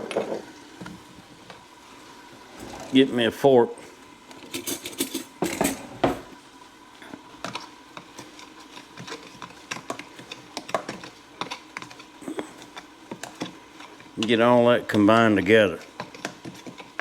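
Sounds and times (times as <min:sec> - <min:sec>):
fork stirring dry flour in bowl: 0:07.4 - 0:17.0.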